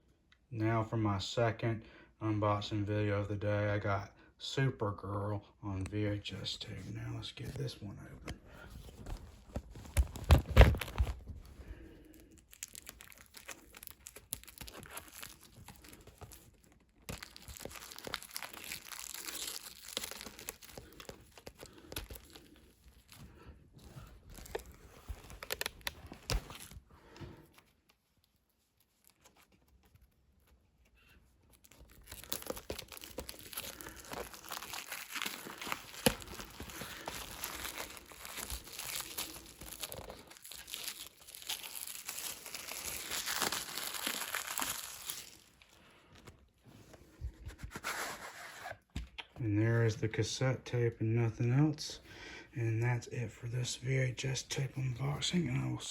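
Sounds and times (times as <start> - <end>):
packaging torn and crinkled: 9.5 - 26.9, 27.6 - 46.5.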